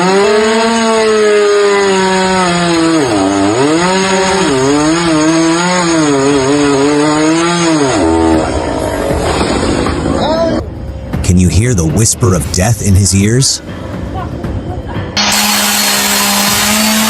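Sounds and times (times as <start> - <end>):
chainsaw cutting wood: 0.0 - 8.8, 15.2 - 17.0.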